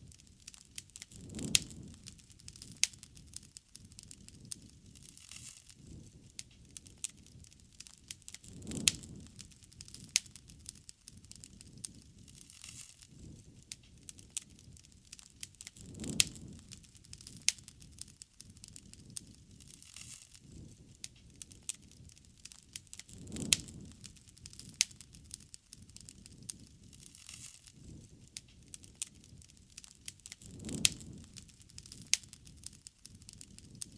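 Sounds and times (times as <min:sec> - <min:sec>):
campfire crackling and popping: 0:00.0 - 0:33.9
low swells of flame noise: 0:00.0 - 0:33.9.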